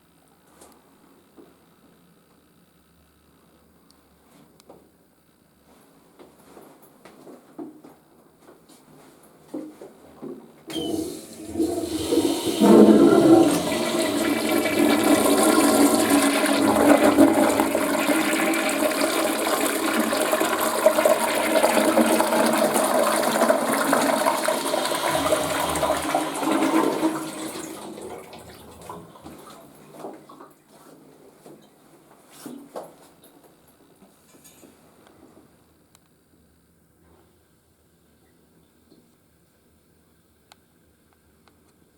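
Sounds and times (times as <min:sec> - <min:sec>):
toilet flushing: 0:10.7 - 0:29.8.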